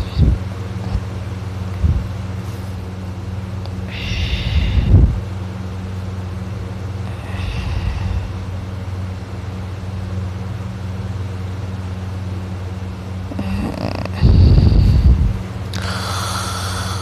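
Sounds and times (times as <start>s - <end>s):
steady low hum: 0.0s - 17.0s
person snoring: 13.3s - 15.2s, 15.8s - 17.0s.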